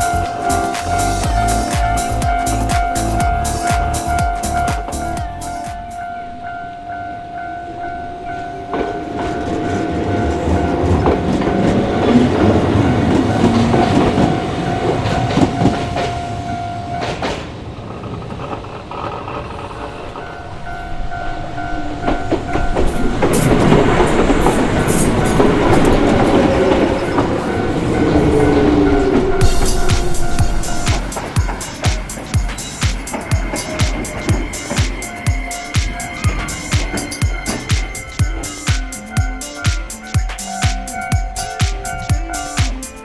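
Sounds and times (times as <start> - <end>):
crossing warning tone: 0.0 - 17.8, 19.9 - 43.0
train wheels clacking over rails: 8.8 - 20.6, 22.1 - 43.0.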